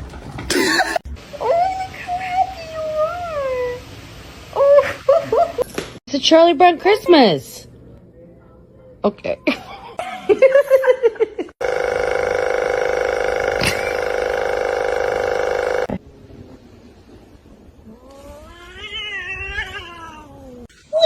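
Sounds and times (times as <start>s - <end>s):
cat yowling: 17.9s - 20.7s.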